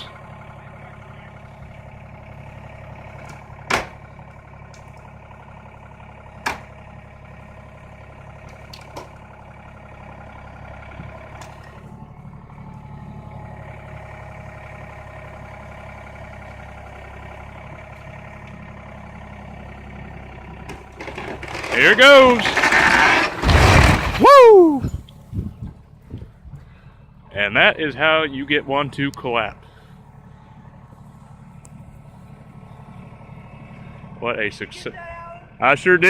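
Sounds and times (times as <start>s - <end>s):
tractor engine running: 0.0s - 36.0s
timber framing cracking: 1.4s - 12.0s, 16.3s - 25.0s.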